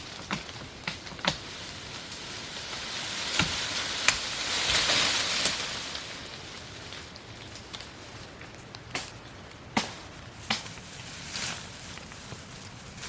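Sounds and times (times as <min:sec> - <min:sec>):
rain falling: 0:00.0 - 0:13.0.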